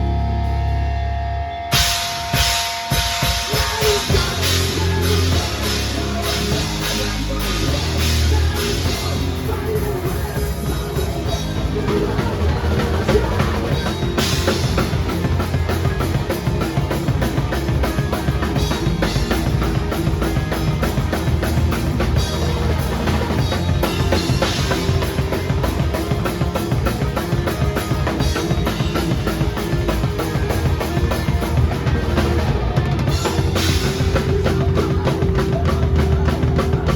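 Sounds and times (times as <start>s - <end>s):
rock backing track: 0.0s - 36.9s
drum kit playing fast beat: 1.6s - 36.9s.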